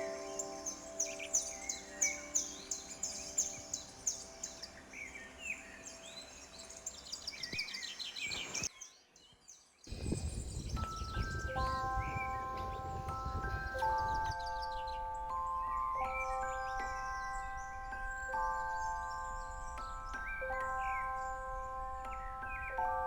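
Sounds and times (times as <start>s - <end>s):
chime-like music notes: 0.0s - 6.7s, 10.0s - 23.0s
soft music notes: 0.0s - 7.4s, 9.9s - 23.0s
birds chirping: 0.0s - 23.0s.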